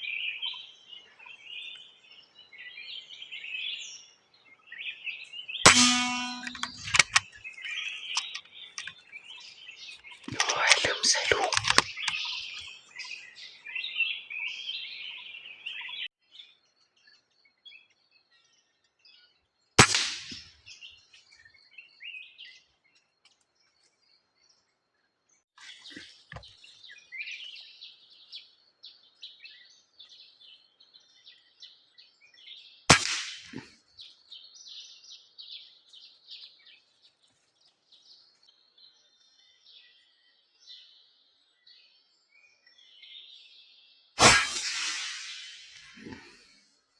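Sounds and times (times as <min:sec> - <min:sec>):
air rifle shots: 0:05.7 - 0:07.2, 0:10.3 - 0:12.2, 0:19.8 - 0:20.4, 0:32.9 - 0:33.6, 0:44.2 - 0:46.2
birds chirping and calling: 0:05.7 - 0:08.9, 0:10.2 - 0:16.0.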